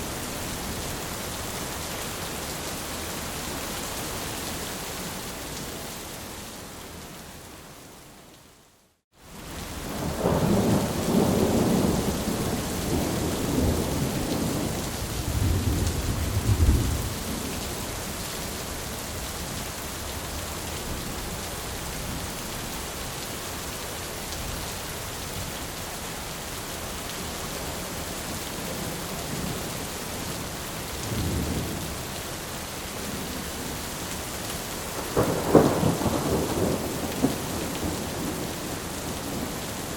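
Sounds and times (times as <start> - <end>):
heavy rain: 0.0 - 39.9
rolling thunder: 10.0 - 17.5, 34.9 - 39.7.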